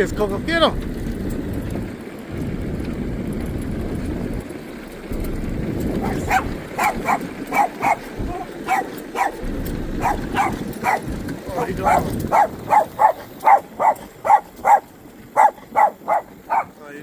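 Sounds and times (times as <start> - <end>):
steady low rumble: 0.0 - 17.0
dog barking excitedly: 6.0 - 16.8.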